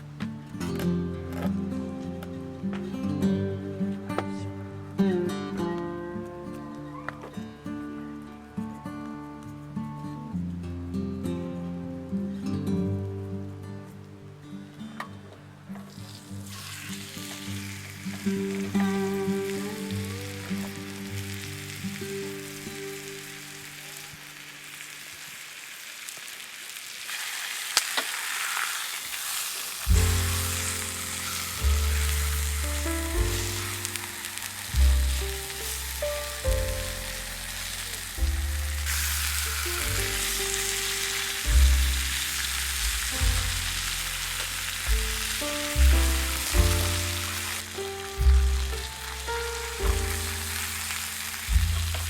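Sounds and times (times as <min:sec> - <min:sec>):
food sizzling in a frying pan: 0:15.9 - 0:52.0
background music with bass line: 0:29.9 - 0:52.0.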